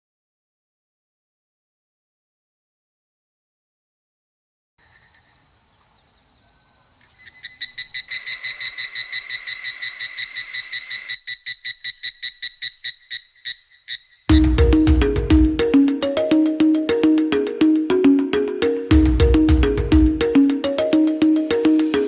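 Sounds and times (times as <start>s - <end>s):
rhythmic animal chirping: 5.1s - 22.0s
loud music: 14.3s - 22.0s.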